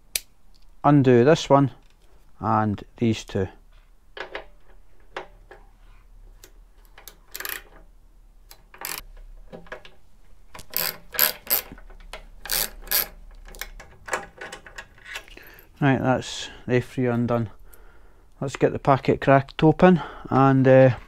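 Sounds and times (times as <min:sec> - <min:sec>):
allen key clicking on bolts: 0:06.9 - 0:07.8, 0:08.5 - 0:09.0, 0:10.5 - 0:15.3.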